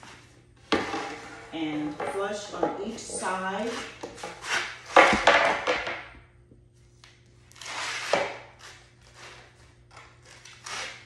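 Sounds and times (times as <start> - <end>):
wooden boards knocking: 5.0 - 6.1.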